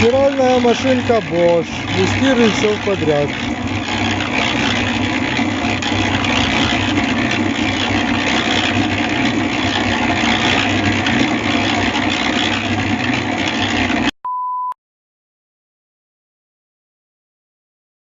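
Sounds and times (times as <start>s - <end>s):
washing machine running: 0.0s - 14.2s.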